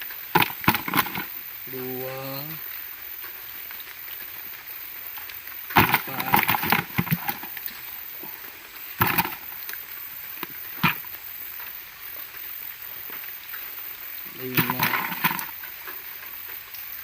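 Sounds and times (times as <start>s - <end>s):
background hiss: 0.0s - 17.0s
prawns knocking and clattering: 0.4s - 1.3s, 5.7s - 7.6s, 9.0s - 9.6s, 14.6s - 15.6s.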